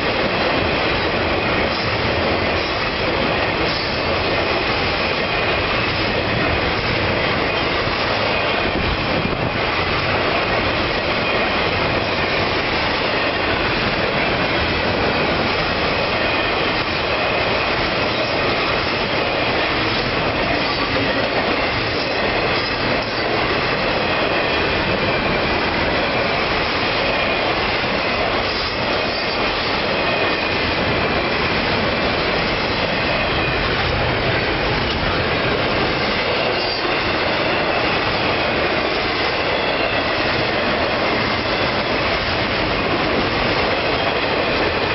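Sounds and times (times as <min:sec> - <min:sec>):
train wheels rumbling on rail: 0:00.0 - 0:44.9
high wheel squeal: 0:36.0 - 0:38.4.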